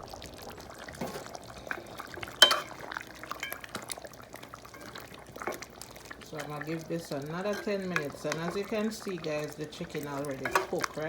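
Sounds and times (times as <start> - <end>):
spoon clinking against pot: 2.4 - 2.7, 3.3 - 3.8, 10.4 - 11.0
spoon scraping in a pot: 2.4 - 2.8, 7.4 - 11.0.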